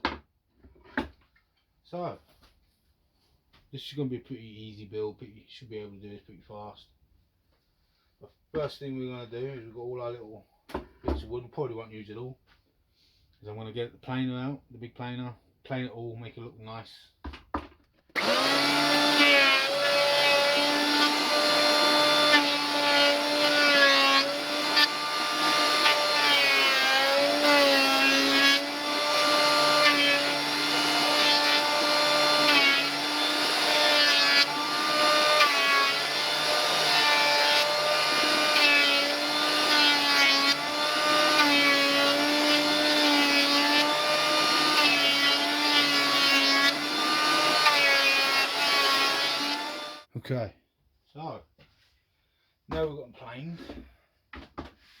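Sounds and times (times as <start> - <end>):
wood planer running: 18.2 - 50.1.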